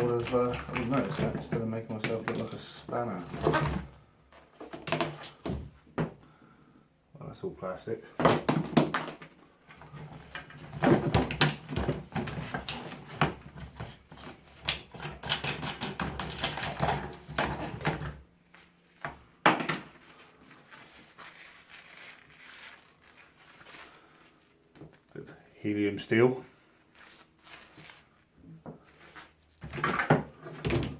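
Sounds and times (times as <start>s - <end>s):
plastic parts clicking and clattering: 0.0s - 3.8s, 8.4s - 18.2s.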